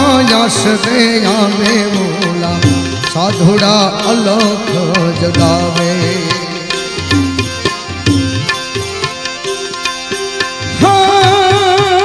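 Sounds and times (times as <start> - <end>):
hand drums beat: 0.0 - 9.5.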